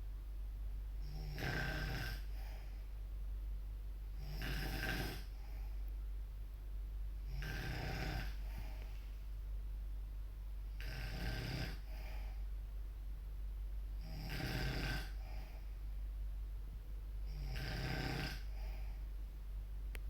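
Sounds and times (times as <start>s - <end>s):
person snoring: 1.0s - 2.5s, 4.2s - 5.4s, 7.3s - 8.8s, 10.8s - 12.2s, 14.0s - 15.6s, 17.3s - 18.9s.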